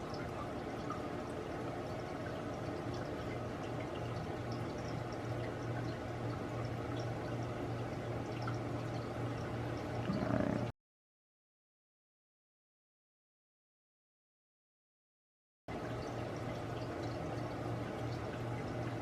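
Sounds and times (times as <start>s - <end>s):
room tone hum and hiss: 0.0s - 10.7s, 15.7s - 19.0s.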